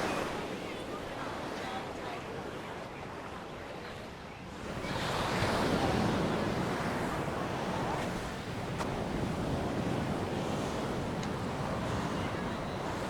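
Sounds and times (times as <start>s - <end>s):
sea waves breaking: 0.0s - 0.7s, 4.6s - 13.0s
wind on microphone: 4.6s - 13.0s.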